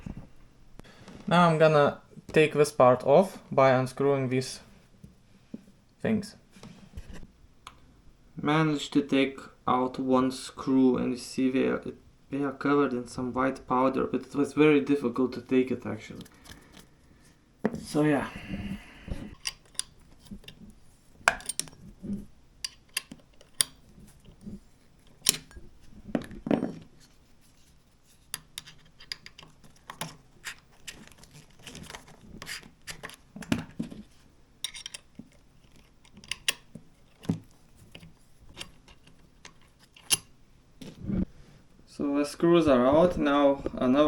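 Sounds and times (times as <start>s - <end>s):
metallic clicks of hand tools: 36.0s - 36.7s.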